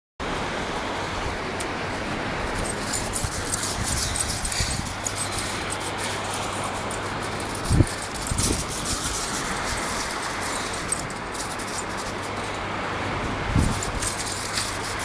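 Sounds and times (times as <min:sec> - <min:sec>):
dog tags jingling: 0:02.4 - 0:12.7, 0:13.3 - 0:15.0.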